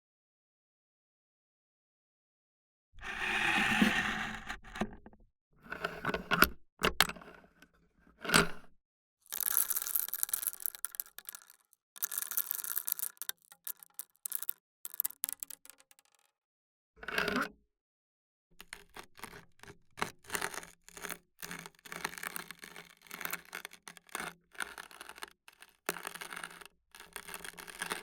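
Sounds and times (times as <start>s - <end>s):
coffee grinder scraping: 3.0s - 5.1s, 9.3s - 15.1s, 18.6s - 28.0s
coffee grinder rattling: 9.2s - 16.2s, 20.2s - 28.0s.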